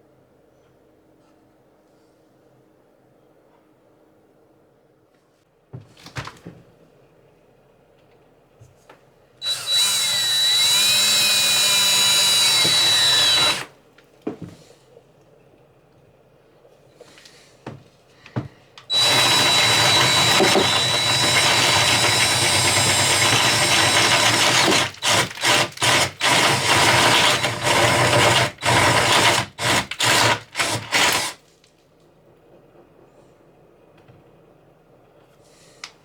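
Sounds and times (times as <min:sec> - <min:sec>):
power drill running: 0:09.4 - 0:13.7, 0:18.9 - 0:31.4.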